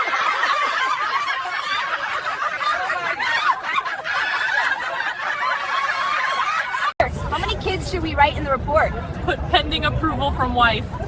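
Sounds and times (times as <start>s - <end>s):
people laughing: 0.0s - 7.0s.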